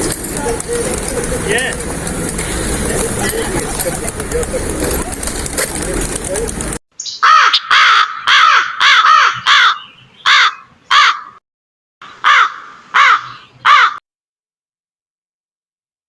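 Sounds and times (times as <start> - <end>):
crow cawing: 7.2 - 11.4, 12.0 - 14.0.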